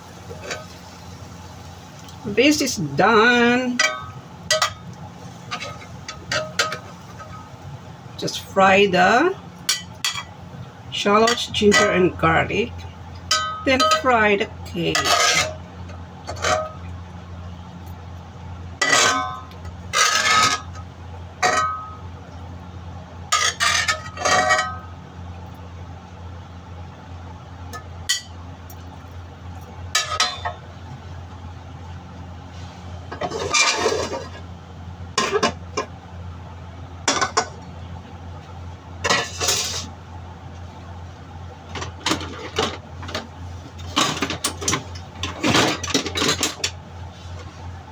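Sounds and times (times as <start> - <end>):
steady low hum: 0.0 - 47.9
utensil scraping frying pan: 2.3 - 7.5, 13.3 - 16.8, 18.8 - 20.8, 23.3 - 24.8, 32.5 - 34.5, 39.0 - 40.0.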